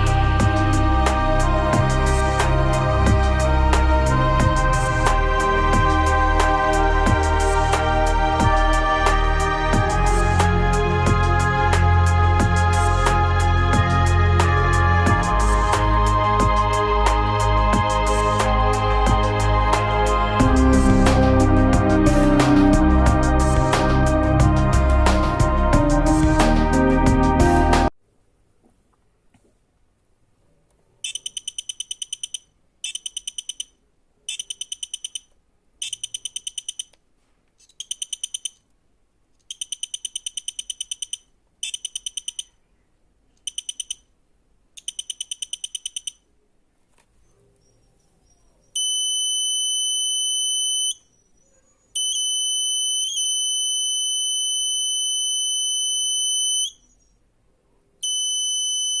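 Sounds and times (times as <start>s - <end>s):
buzzer beeping rapidly: 58.0s - 59.0s.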